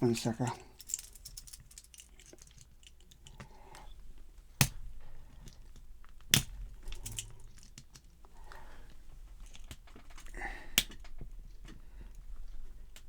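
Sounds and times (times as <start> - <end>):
sharp metal snaps: 4.6 - 4.9, 6.2 - 8.0
small metal clicks and scrapes: 6.4 - 8.1.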